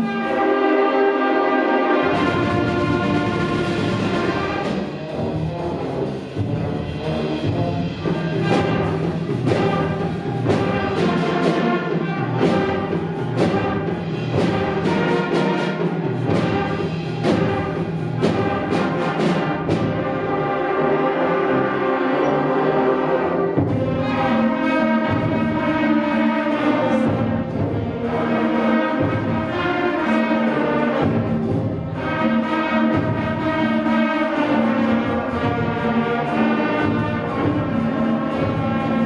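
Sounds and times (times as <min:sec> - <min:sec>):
concert band playing: 0:00.0 - 0:39.0
sharp drum strikes: 0:02.1 - 0:20.2.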